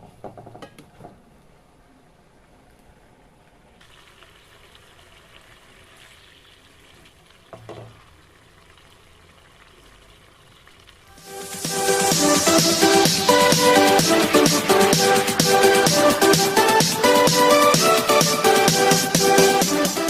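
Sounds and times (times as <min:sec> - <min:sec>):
food sizzling in a pan: 0:03.8 - 0:11.6
electronic dance music: 0:11.1 - 0:20.0.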